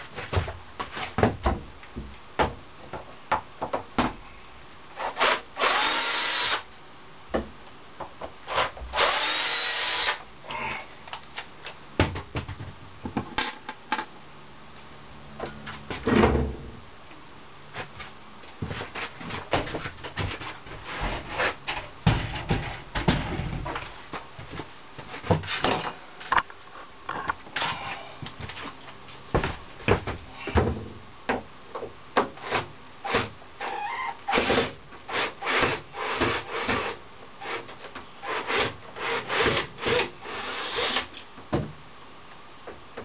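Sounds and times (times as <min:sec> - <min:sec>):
objects knocking and scraping: 0:17.8 - 0:26.5.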